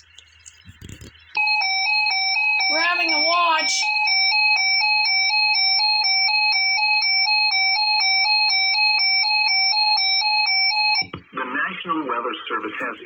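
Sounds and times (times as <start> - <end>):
two-pitch warbling alert tone: 2.6 - 4.0.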